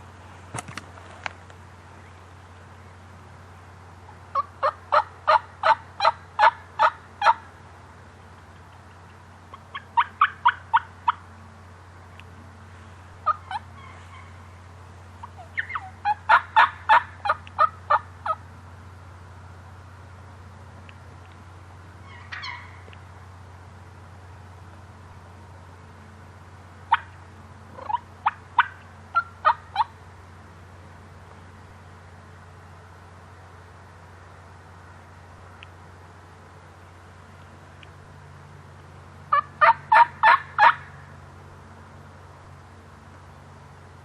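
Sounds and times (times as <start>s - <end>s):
turkey yelping: 4.3s - 7.5s, 9.5s - 11.2s, 13.2s - 14.4s, 15.2s - 18.4s, 22.0s - 23.0s, 26.9s - 29.9s, 39.3s - 40.9s
faint clicks: 12.1s - 12.3s, 20.8s - 21.4s, 35.6s - 35.8s, 37.4s - 38.0s.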